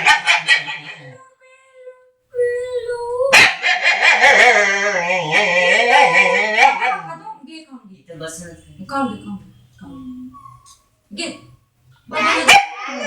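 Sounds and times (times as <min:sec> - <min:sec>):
dog whining: 0:03.3 - 0:07.2, 0:12.2 - 0:13.0.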